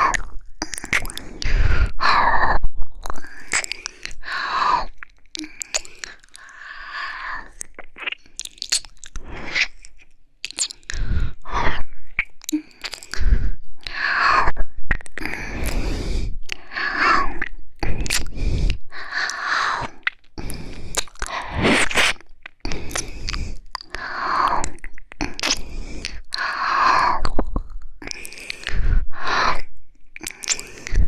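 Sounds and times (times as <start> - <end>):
wet mouth smacks and clicks: 0.0 - 1.5, 3.0 - 11.2, 12.1 - 14.0, 14.9 - 31.0
breathy exhalations: 15.2 - 31.0.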